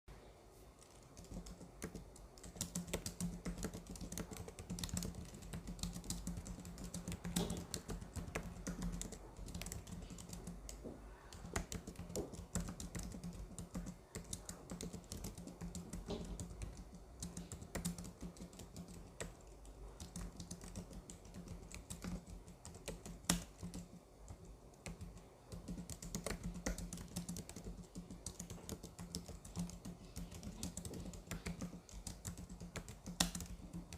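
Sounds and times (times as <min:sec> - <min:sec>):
keyboard typing clicks: 0:00.8 - 0:33.9.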